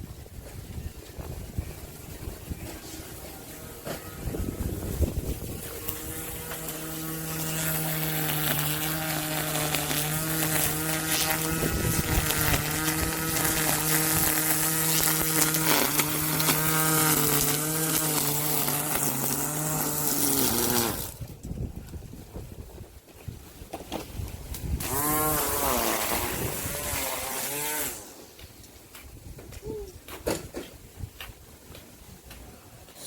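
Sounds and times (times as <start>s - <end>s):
small engine humming: 2.4s - 21.2s, 24.8s - 28.2s.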